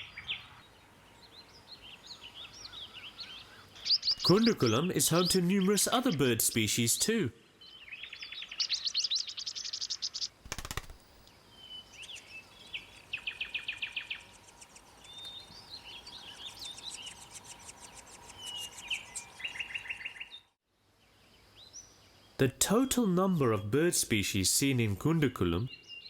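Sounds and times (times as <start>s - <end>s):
birds trilling and chirping: 0.0s - 20.6s.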